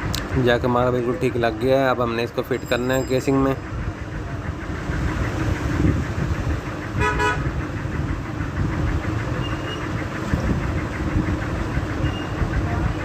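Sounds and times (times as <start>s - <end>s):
road traffic rumble: 0.0s - 13.0s
vehicle horn toot: 7.0s - 7.5s.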